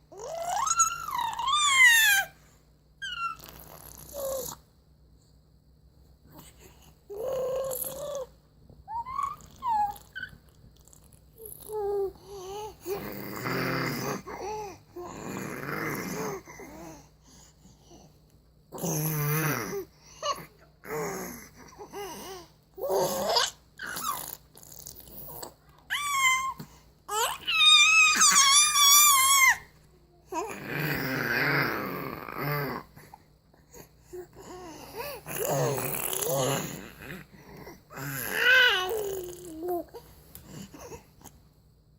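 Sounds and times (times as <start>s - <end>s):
baby vocalizing: 0.1s - 2.3s, 7.1s - 8.3s, 8.9s - 17.0s, 18.8s - 29.6s, 30.2s - 33.1s, 33.7s - 41.0s
baby growling: 0.1s - 2.4s, 3.0s - 4.6s, 6.3s - 8.3s, 8.9s - 17.1s, 18.7s - 41.3s.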